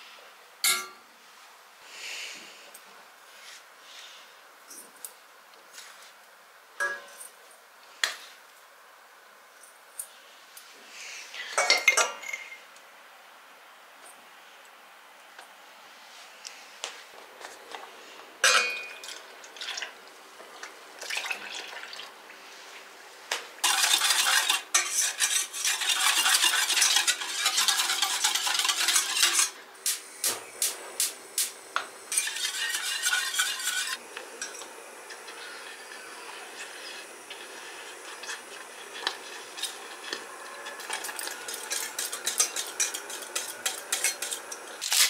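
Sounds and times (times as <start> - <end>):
hissing noise: 29.7 - 44.8.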